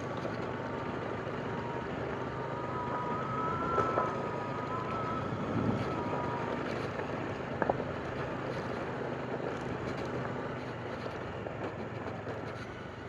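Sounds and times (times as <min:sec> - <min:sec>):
motorcycle running: 0:00.0 - 0:13.0
wind rushing over microphone: 0:04.3 - 0:06.7.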